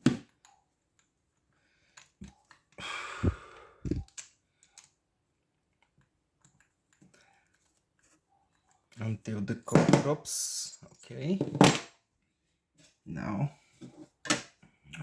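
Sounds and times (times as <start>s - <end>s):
dull thumps: 3.8s - 4.0s.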